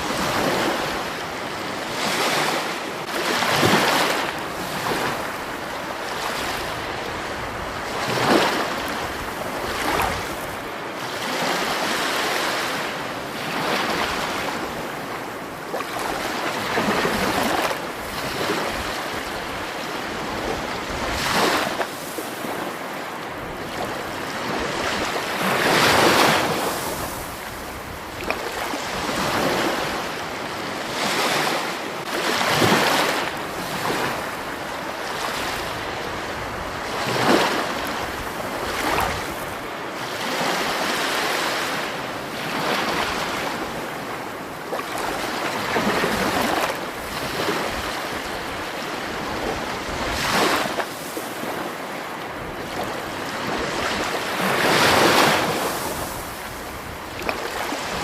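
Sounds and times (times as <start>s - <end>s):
rushing water: 0.0s - 15.0s, 30.8s - 58.0s.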